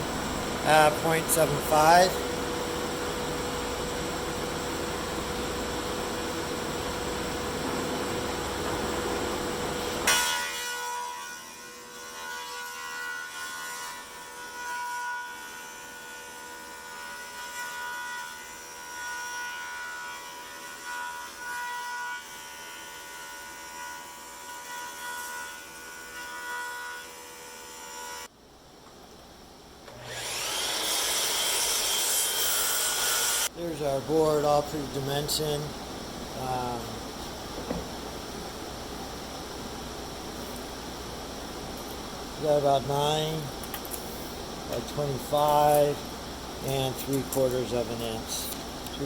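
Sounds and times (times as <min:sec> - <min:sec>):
thickness planer cutting wood: 0:29.9 - 0:33.5.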